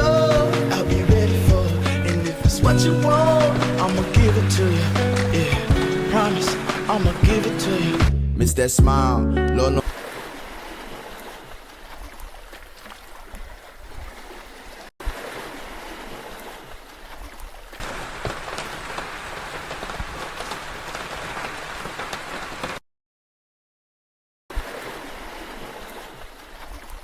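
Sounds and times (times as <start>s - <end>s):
running water rushing: 0.0s - 8.1s, 9.8s - 22.8s.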